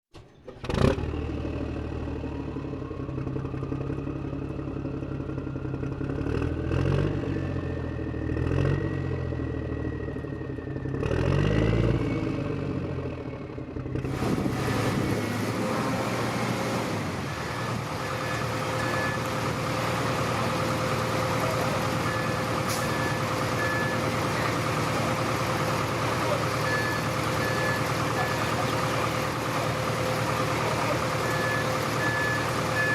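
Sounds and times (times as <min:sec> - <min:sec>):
heavy machinery engine whining: 0:00.2 - 0:32.9
reversing beeps: 0:18.0 - 0:19.3, 0:21.4 - 0:24.2, 0:26.6 - 0:28.7, 0:31.2 - 0:32.9.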